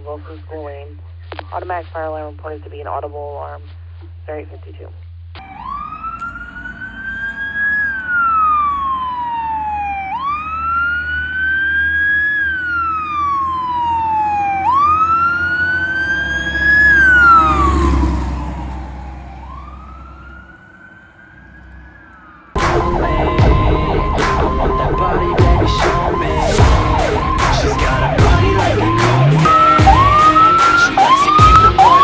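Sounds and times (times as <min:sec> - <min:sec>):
fire engine siren wailing: 0:05.4 - 0:32.0
low rumble: 0:14.6 - 0:30.4.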